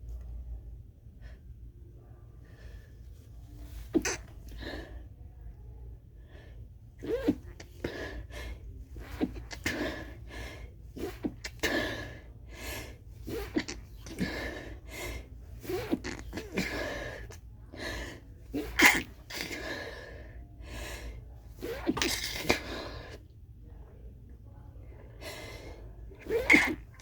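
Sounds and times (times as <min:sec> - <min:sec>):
person stifling sneezes: 0:03.8 - 0:04.7, 0:07.0 - 0:08.2, 0:09.0 - 0:10.2, 0:13.2 - 0:14.8, 0:15.6 - 0:17.4, 0:18.5 - 0:19.9, 0:21.6 - 0:23.1, 0:26.2 - 0:27.0.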